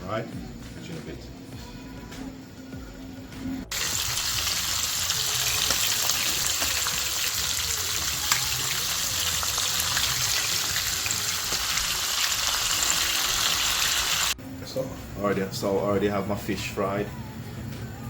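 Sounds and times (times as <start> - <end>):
food sizzling in hot oil: 3.7 - 14.4.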